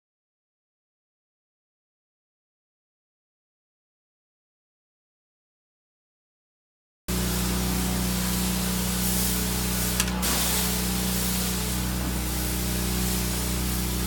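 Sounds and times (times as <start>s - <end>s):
pressure washer spraying: 7.1s - 14.0s.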